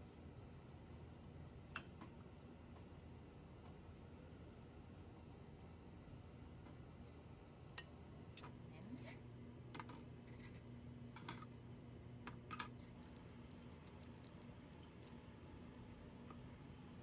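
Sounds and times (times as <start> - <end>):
faint steady hum: 0.0 - 17.0
small hard objects clicking: 13.0 - 15.1.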